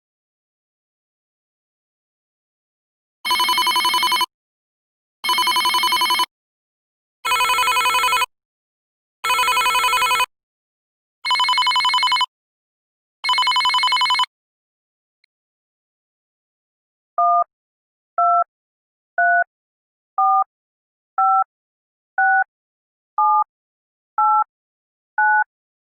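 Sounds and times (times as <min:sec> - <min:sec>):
electronic telephone ringing: 0:03.3 - 0:04.3, 0:05.3 - 0:06.3, 0:07.3 - 0:08.3, 0:09.3 - 0:10.3, 0:11.3 - 0:12.3, 0:13.2 - 0:14.3.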